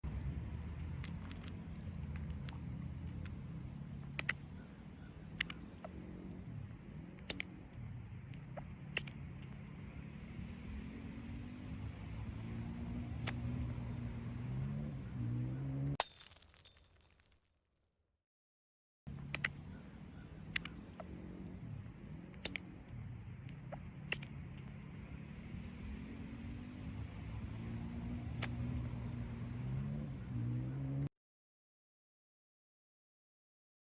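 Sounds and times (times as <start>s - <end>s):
steady low rumble: 0.0s - 14.2s, 19.1s - 29.2s
chipmunk cracking seeds: 0.1s - 10.0s
chipmunk clicks: 0.8s - 6.4s, 19.2s - 21.6s.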